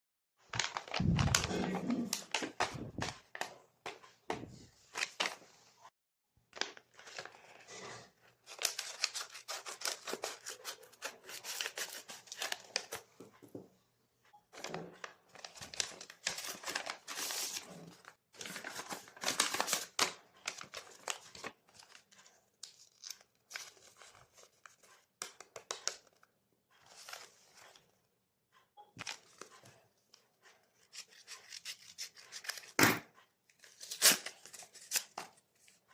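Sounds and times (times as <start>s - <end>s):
plastic packaging crinkling and tearing: 0.5s - 3.1s, 8.4s - 12.9s, 18.4s - 22.0s.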